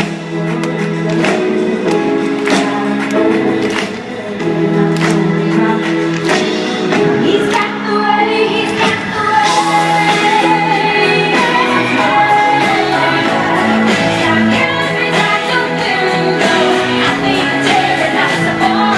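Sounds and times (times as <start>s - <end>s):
live band playing: 0.0s - 18.9s.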